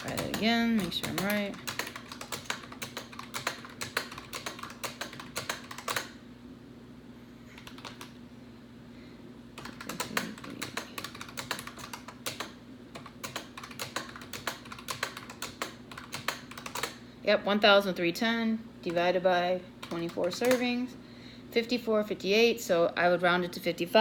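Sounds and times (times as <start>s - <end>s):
keys clicking: 0.0s - 6.1s, 9.6s - 17.0s.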